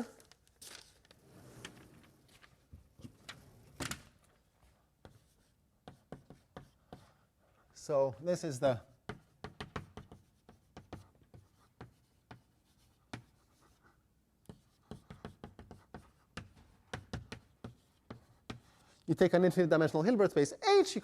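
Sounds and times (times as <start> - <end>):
chalk tapping and scratching: 5.0 - 7.6, 8.4 - 19.1.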